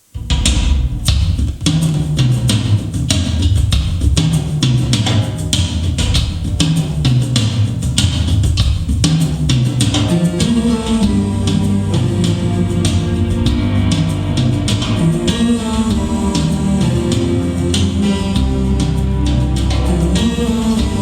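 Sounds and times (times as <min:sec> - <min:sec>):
drum hits: 0:00.2 - 0:21.0
bass and guitar notes: 0:09.9 - 0:21.0.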